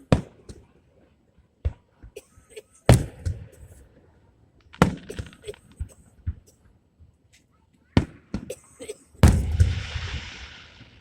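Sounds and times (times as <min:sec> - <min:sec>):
fireworks booming: 0:02.9 - 0:03.6, 0:04.8 - 0:06.4, 0:09.2 - 0:11.0
fireworks crackling: 0:04.7 - 0:05.9, 0:09.2 - 0:11.0.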